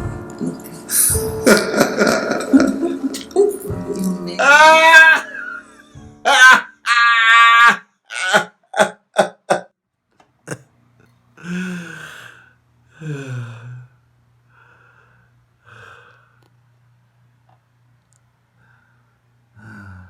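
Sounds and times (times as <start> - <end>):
person gasping and breathing: 11.4 - 13.9, 19.6 - 20.0.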